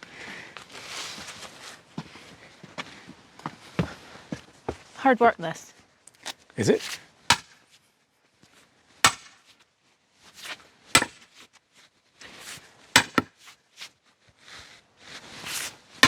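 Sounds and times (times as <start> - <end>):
hammer striking steel wedge: 7.3 - 7.6, 9.0 - 9.4, 10.4 - 11.3, 12.4 - 13.5.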